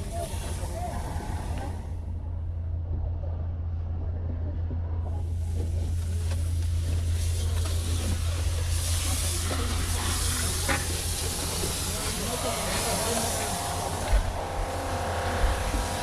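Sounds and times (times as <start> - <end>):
broad hiss: 0.0 - 1.9, 5.4 - 16.0
vehicle engine droning: 0.0 - 16.0.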